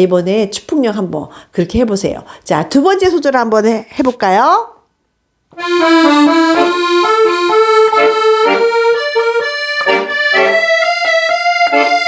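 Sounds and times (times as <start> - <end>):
solo accordion: 5.6 - 12.0.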